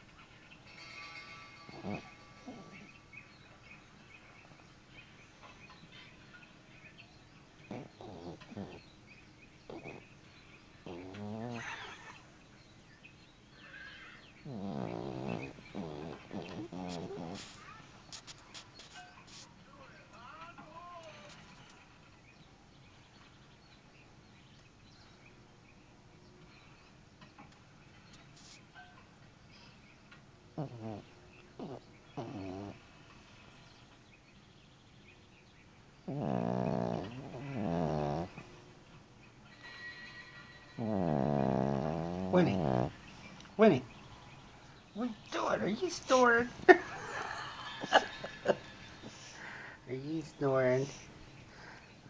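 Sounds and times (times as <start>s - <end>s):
faint background hiss: 0.0s - 52.0s
dog snoring: 1.6s - 3.4s, 7.6s - 12.2s, 13.6s - 17.8s, 30.6s - 33.2s, 36.0s - 38.6s, 39.5s - 44.0s.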